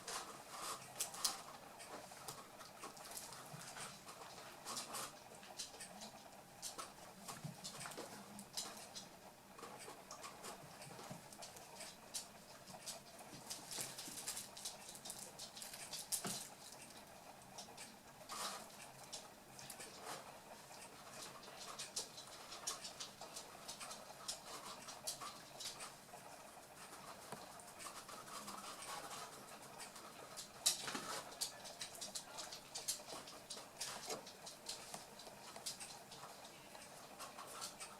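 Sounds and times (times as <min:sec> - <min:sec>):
puppies pattering and scuffling: 0:00.0 - 0:37.9.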